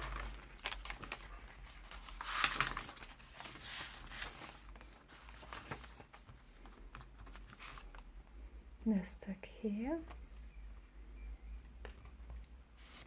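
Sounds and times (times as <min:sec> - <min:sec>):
paper pages rustling: 0:00.0 - 0:08.1, 0:11.8 - 0:13.0.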